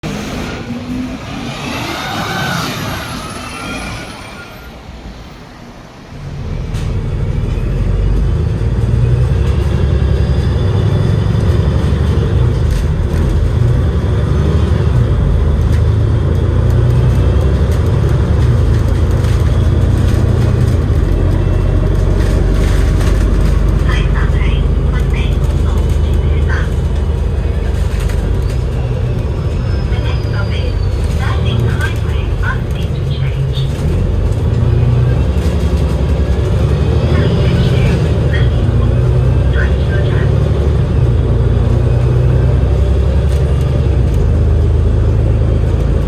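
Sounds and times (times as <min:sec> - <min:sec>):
bus engine rumble: 0:00.0 - 0:46.0
high-pitched whines: 0:00.1 - 0:05.5.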